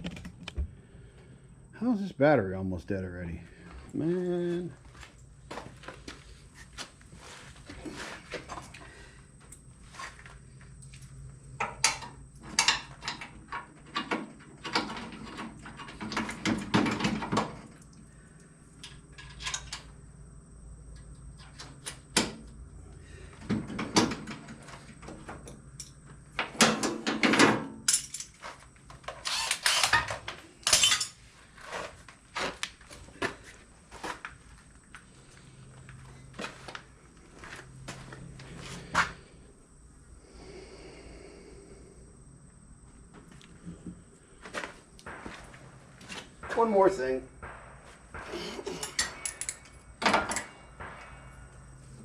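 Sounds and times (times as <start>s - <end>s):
hand tools and metal parts clanking: 5.0s - 17.8s, 18.8s - 20.0s, 23.4s - 39.2s, 44.4s - 51.1s.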